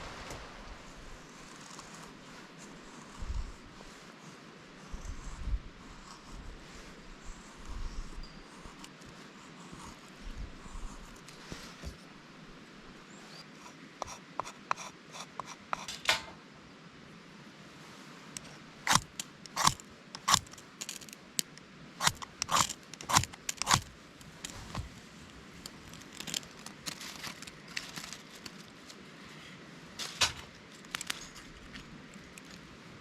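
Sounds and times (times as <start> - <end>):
hard objects clicking and clacking: 18.9 - 24.8.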